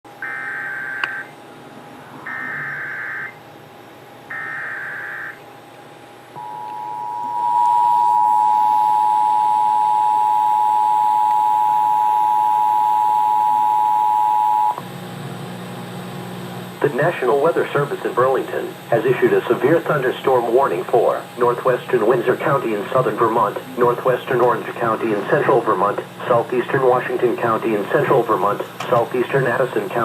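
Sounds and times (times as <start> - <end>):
buzzing data tone bursts: 2.2 - 3.4, 4.3 - 5.4.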